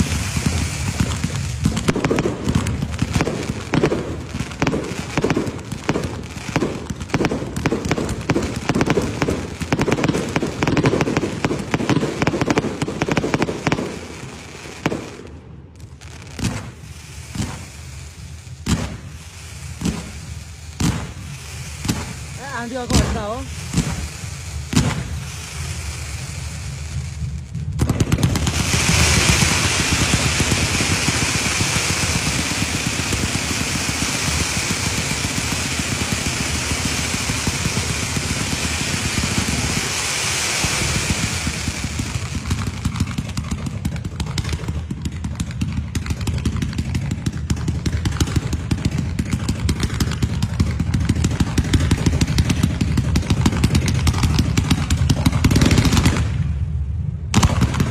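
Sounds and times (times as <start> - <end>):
loud hiss: 0.0 - 6.8, 16.1 - 27.3, 28.4 - 43.0
firecrackers popping: 0.0 - 57.9.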